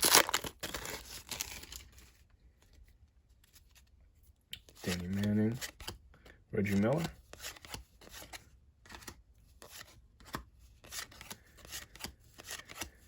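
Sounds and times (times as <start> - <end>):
cards scraping and clicking: 4.6 - 13.0.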